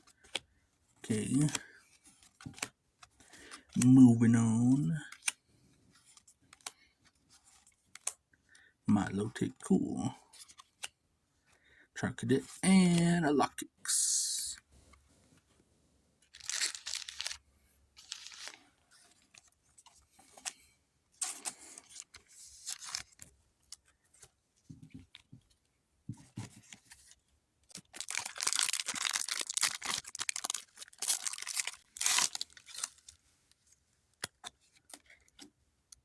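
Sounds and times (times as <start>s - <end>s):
foil wrapper crinkling and tearing: 16.3s - 17.4s, 18.0s - 18.6s, 27.7s - 33.2s.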